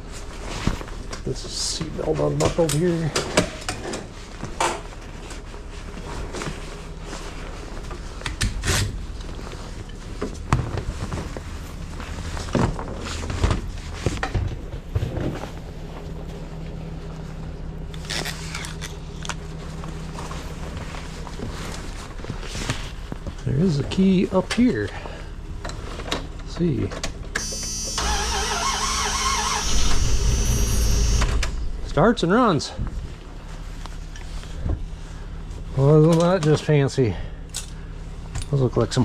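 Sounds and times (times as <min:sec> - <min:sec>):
hands rummaging in car interior: 0:04.0 - 0:16.7
low engine hum: 0:04.1 - 0:36.0.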